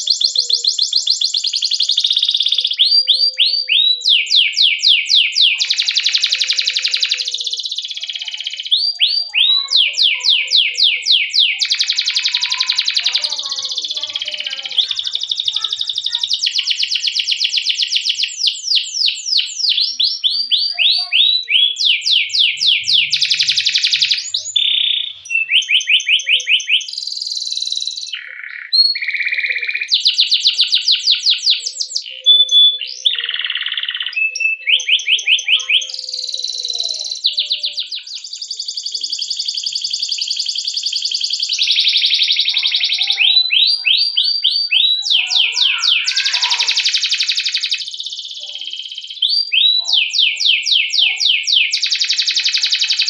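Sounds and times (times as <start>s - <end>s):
canary singing trills: 0.0s - 53.0s.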